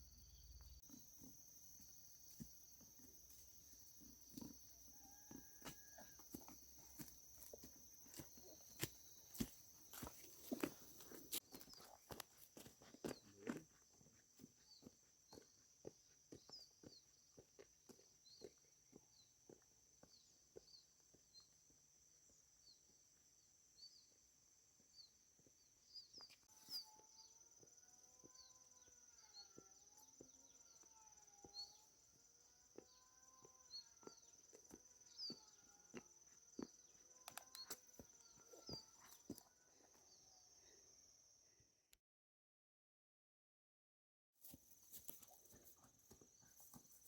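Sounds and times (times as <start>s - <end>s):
small repeated chirps: 35.1s - 39.5s.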